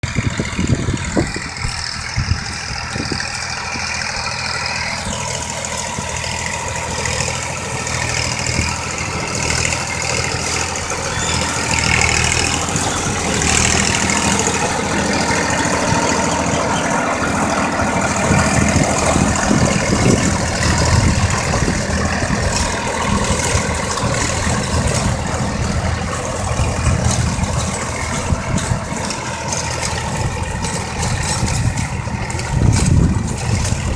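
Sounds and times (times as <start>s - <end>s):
tractor engine running: 0.0s - 33.9s.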